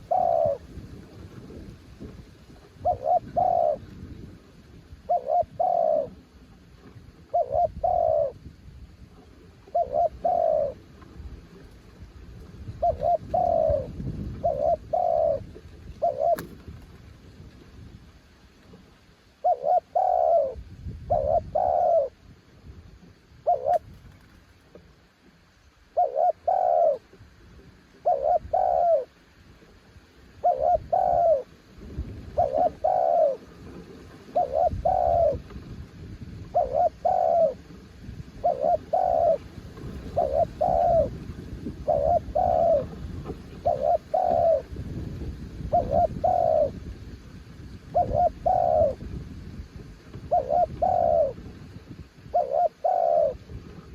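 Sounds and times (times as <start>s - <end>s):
dove cooing: 0.0s - 4.3s, 5.0s - 6.4s, 7.2s - 11.0s, 12.7s - 16.7s, 19.4s - 22.2s, 23.4s - 24.4s, 25.9s - 27.2s, 27.9s - 29.2s, 30.4s - 31.5s, 32.2s - 35.7s, 36.4s - 37.8s, 38.4s - 44.8s, 45.6s - 46.8s, 47.9s - 49.1s, 50.2s - 51.5s, 52.2s - 53.8s
wind rumble on microphone: 0.0s - 53.9s.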